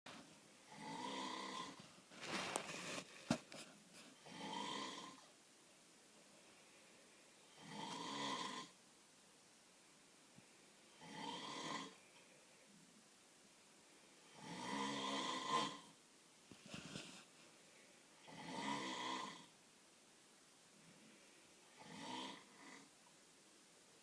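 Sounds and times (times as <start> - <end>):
person snoring: 0.7 - 1.8, 4.2 - 5.2, 7.5 - 8.8, 10.9 - 12.0, 14.2 - 15.9, 18.2 - 19.5, 21.6 - 22.9.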